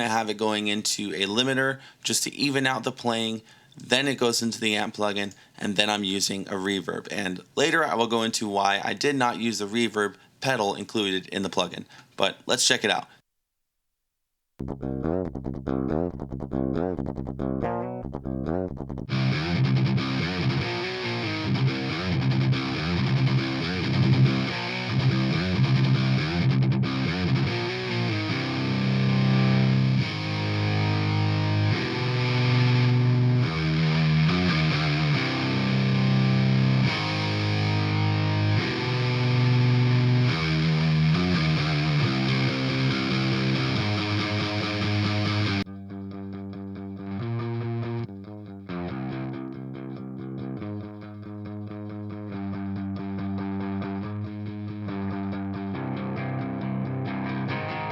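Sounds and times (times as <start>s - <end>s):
distorted guitar picking notes: 14.6s - 57.9s
heavy metal rhythm guitars: 19.1s - 45.6s, 53.1s - 57.9s.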